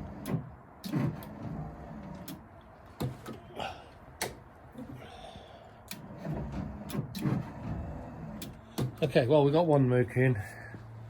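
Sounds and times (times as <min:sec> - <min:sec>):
sharp clicks and light knocks: 0:04.2 - 0:05.0.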